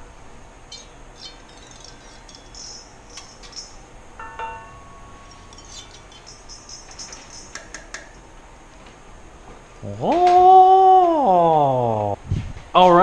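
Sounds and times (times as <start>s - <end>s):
light metallic clinks: 0.0s - 9.7s
chime-like metallic ping: 0.7s - 8.2s.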